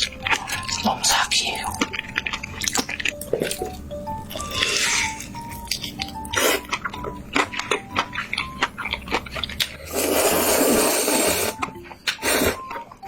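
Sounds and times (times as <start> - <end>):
wet chewing and smacking: 0.0 - 10.1
slurping noodles: 6.3 - 6.8, 9.6 - 12.7.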